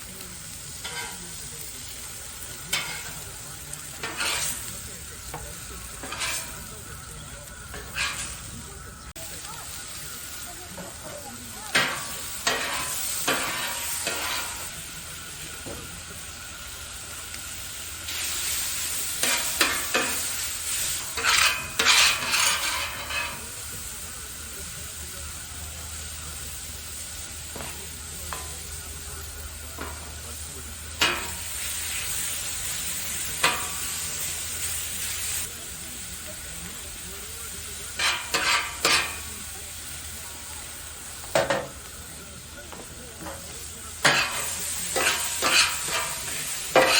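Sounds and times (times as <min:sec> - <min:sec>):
food sizzling in a frying pan: 0:00.0 - 0:46.9
spatula scraping a pan: 0:00.7 - 0:03.2, 0:03.8 - 0:09.0, 0:11.7 - 0:14.7, 0:17.8 - 0:23.6, 0:30.9 - 0:35.5, 0:37.8 - 0:39.3, 0:43.2 - 0:46.9.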